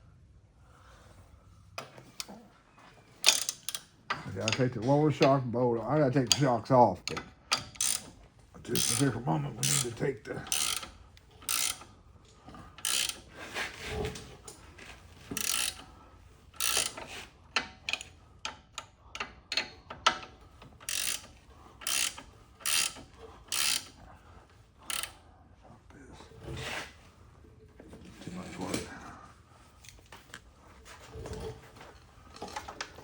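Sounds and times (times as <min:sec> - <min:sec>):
socket ratchet clicking: 0:03.2 - 0:03.9, 0:07.1 - 0:09.9, 0:10.5 - 0:11.9, 0:12.8 - 0:13.2, 0:15.4 - 0:15.8, 0:16.6 - 0:17.1, 0:20.8 - 0:24.0, 0:24.9 - 0:25.2.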